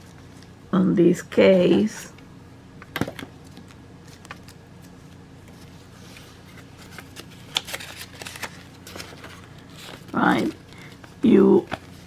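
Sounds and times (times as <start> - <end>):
paper rustling: 3.4 - 12.0.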